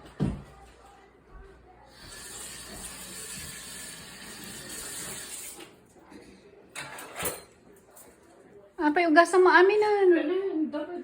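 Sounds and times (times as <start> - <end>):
dishes being washed: 2.0 - 5.8
tap running water into sink: 2.1 - 5.6.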